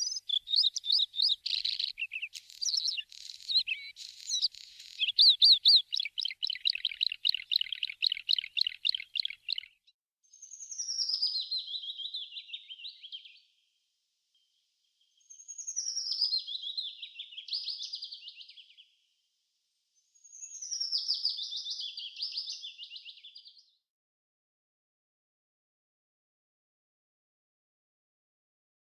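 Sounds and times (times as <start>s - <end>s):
songbird singing trills: 0.0s - 13.5s, 15.2s - 18.9s, 20.2s - 23.6s.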